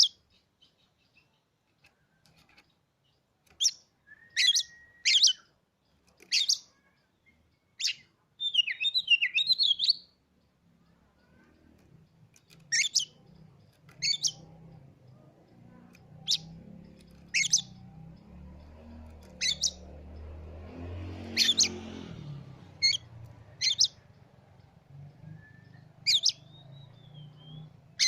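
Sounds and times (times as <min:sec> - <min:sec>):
bird sharp high calls: 0:03.6 - 0:05.5, 0:06.2 - 0:10.2, 0:12.6 - 0:13.2, 0:13.9 - 0:14.5, 0:15.9 - 0:16.6, 0:17.2 - 0:17.8, 0:19.2 - 0:19.9, 0:21.3 - 0:21.9, 0:22.8 - 0:24.0, 0:25.3 - 0:28.0.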